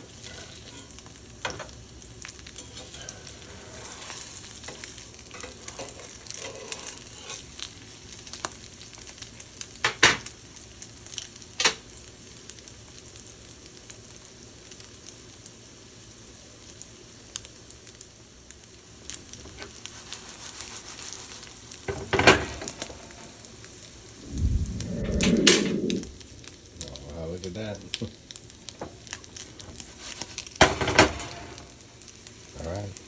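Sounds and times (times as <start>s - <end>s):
croquettes sizzling in a frying pan: 0.0s - 24.3s, 26.1s - 33.0s.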